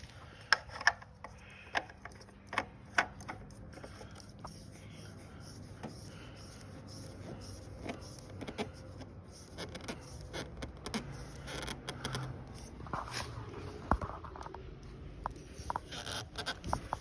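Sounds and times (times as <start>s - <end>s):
hands clicking and tapping on engine: 0.4s - 4.7s, 7.4s - 12.7s, 15.2s - 17.0s.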